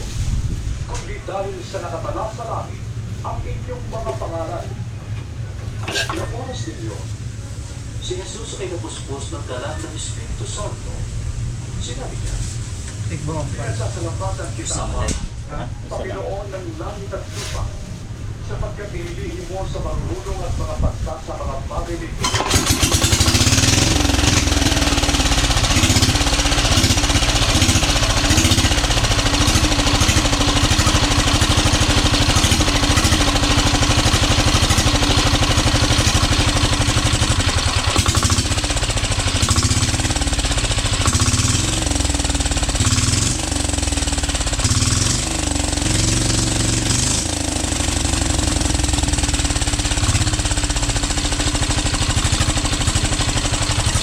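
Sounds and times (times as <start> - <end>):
diesel engine chugging: 0.0 - 54.0.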